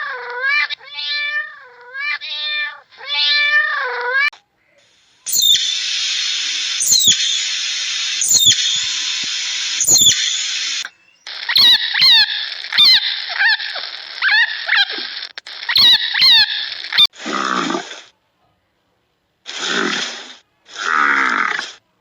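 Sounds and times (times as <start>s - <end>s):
steady hiss: 4.8s - 11.5s
animal squealing calls: 5.3s - 17.1s
short harsh animal calls: 5.3s - 18.1s.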